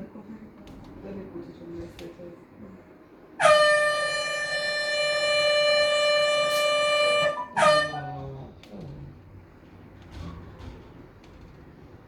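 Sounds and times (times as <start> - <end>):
air horn blasting: 3.4 - 8.4.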